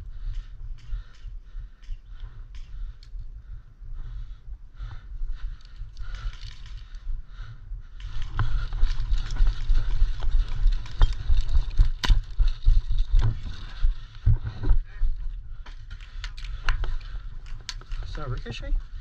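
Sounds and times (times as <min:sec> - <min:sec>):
low wind rumble on microphone: 0:00.0 - 0:19.0
sharp clicks and snaps: 0:00.2 - 0:03.3, 0:05.4 - 0:07.1, 0:15.6 - 0:18.5.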